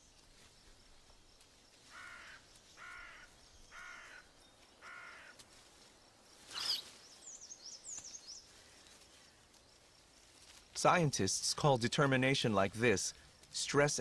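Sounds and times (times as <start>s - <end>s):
short pitched animal calls: 6.5s - 7.0s
high bird chirps: 6.5s - 8.4s.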